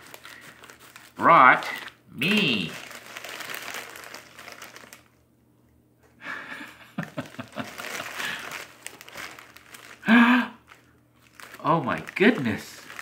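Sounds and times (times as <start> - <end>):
packaging crinkling and tearing: 0.0 - 5.2, 7.0 - 13.0
loud breath or exclamation: 10.0 - 10.6.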